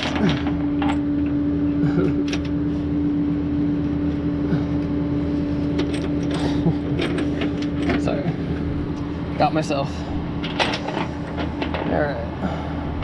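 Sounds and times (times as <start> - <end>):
truck engine idling: 0.0 - 13.0
light metallic clinks and rattles: 5.7 - 8.4.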